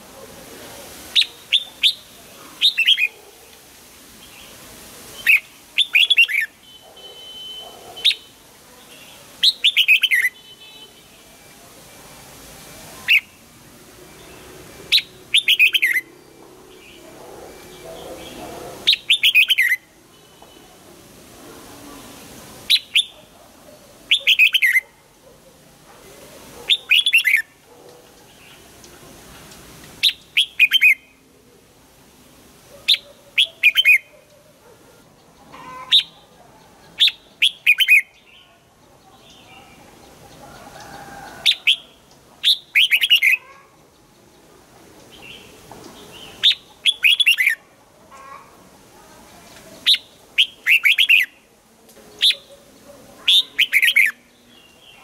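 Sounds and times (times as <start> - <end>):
bird singing: 14.1 - 20.6, 35.2 - 47.6, 49.5 - 55.0.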